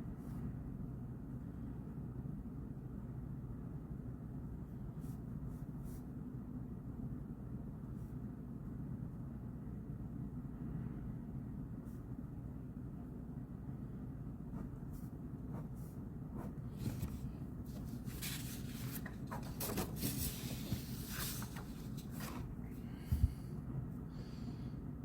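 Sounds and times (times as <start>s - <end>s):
low room hum: 0.0s - 25.0s
paper rustling: 16.8s - 22.6s.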